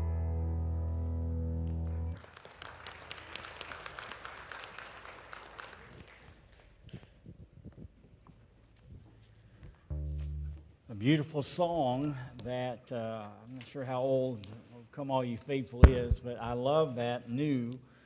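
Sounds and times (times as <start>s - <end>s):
congregation applauding: 1.8s - 6.8s.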